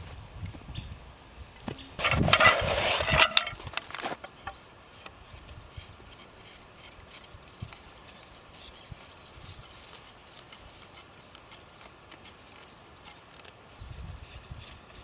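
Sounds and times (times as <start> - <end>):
light ticks and rustles: 1.3 - 15.0.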